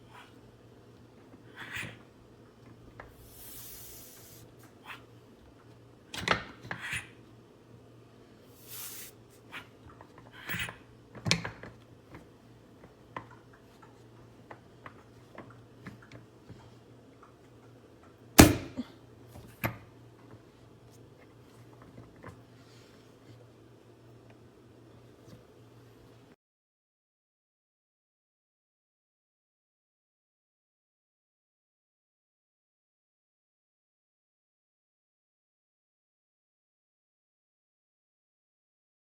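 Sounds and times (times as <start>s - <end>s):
brief hissing rushes: 3.2s - 4.4s, 8.6s - 9.2s
sharp knock: 18.4s - 18.8s.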